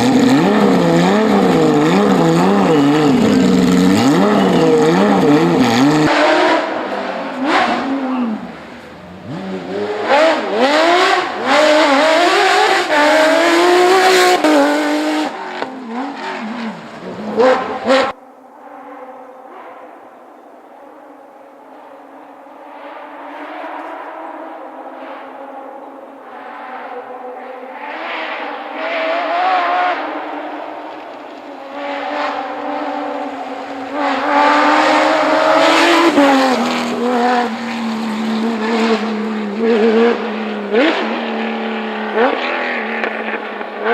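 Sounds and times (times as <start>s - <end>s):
engine revving bursts: 0.0s - 18.2s
rally car engine accelerating: 0.0s - 43.9s
tyre and road noise: 0.0s - 43.9s.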